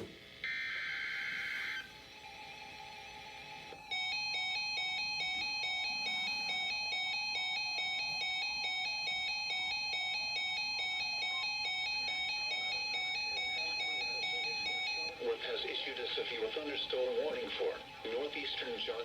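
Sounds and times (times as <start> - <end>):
electronic alarm beeping: 0.4 - 1.9, 3.8 - 15.2.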